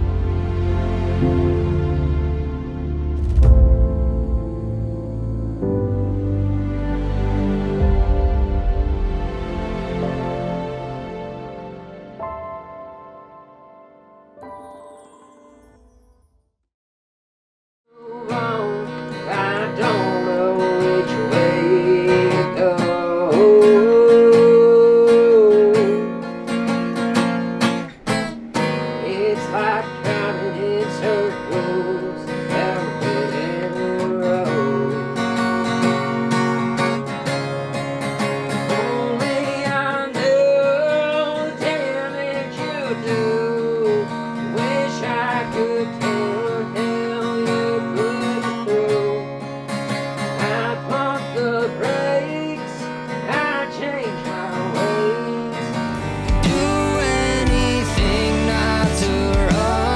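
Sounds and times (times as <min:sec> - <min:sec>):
strummed acoustic guitar: 0:00.0 - 0:12.4, 0:18.0 - 0:59.9
person singing: 0:17.9 - 0:26.5, 0:28.8 - 0:36.6, 0:38.6 - 0:49.4, 0:50.3 - 0:59.9.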